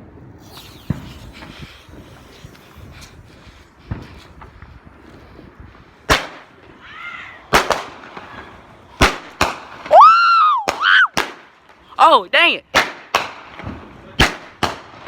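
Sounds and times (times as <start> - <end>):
high firework whistle: 0.4 - 2.9
fireworks cracks and bangs: 7.5 - 11.8, 12.8 - 15.0.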